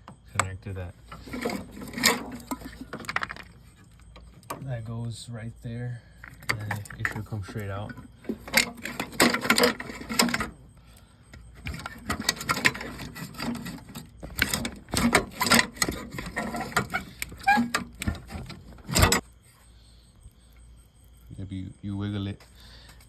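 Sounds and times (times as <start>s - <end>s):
metallic clicks and rattles: 0.0s - 4.6s, 6.2s - 10.6s, 11.3s - 19.2s.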